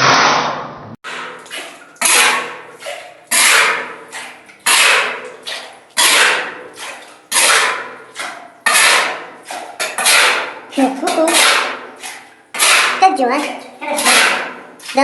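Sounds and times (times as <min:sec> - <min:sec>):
loud sharp knocks: 0:12.6 - 0:13.1, 0:14.0 - 0:14.7.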